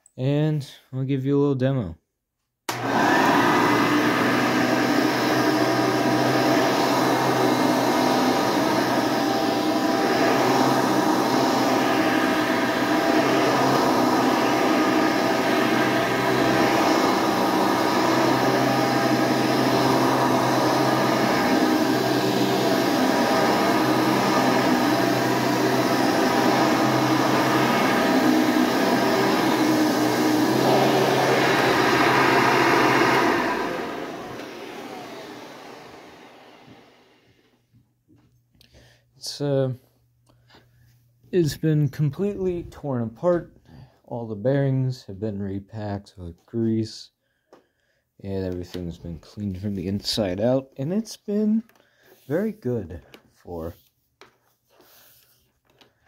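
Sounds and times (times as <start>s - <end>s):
upright vacuum cleaner running: 2.7s - 37.6s.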